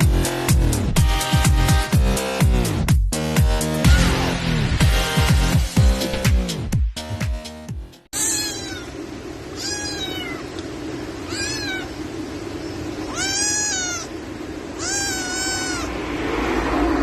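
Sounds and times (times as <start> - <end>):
cat meowing: 8.2 - 10.5, 11.2 - 12.0, 13.0 - 16.0
steady low hum: 8.2 - 17.0.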